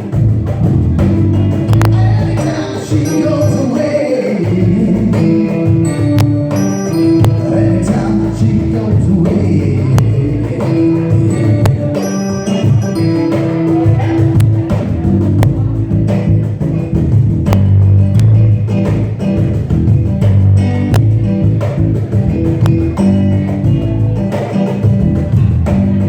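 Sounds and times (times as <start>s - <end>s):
live band playing: 0.0s - 26.0s
person singing: 1.8s - 16.7s.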